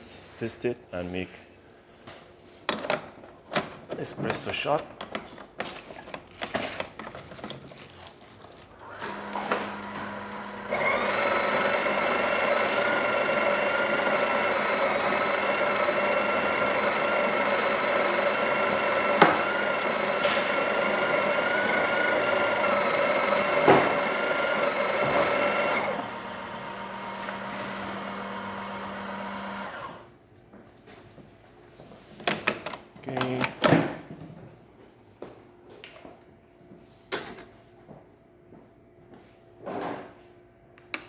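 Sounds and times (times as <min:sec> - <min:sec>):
espresso machine pump humming: 0:09.0 - 0:30.0.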